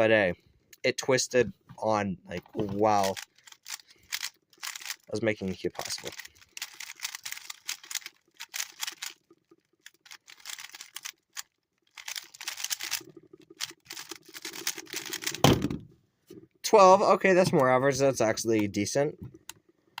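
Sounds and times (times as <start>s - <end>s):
puzzle cube clicking: 2.6s - 5.1s, 5.8s - 15.5s
loud thump: 15.4s - 15.9s.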